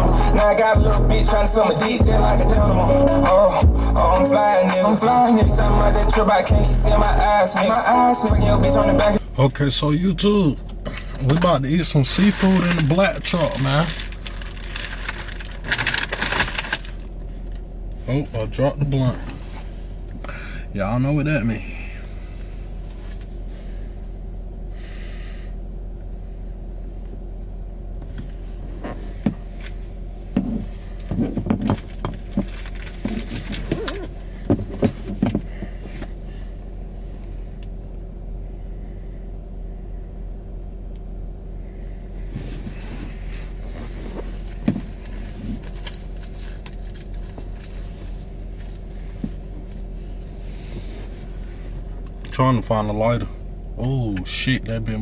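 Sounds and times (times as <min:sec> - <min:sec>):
vehicle idling hum: 0:00.0 - 0:55.0
knocks and rattles of rummaging: 0:30.3 - 0:36.1.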